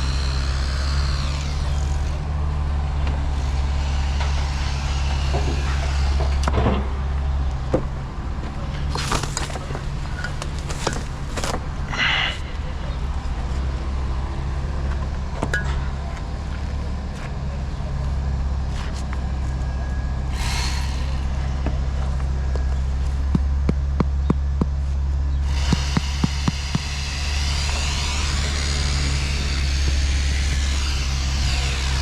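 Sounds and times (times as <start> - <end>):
low motor rumble: 0.0 - 32.0
short noisy burst: 20.3 - 22.4.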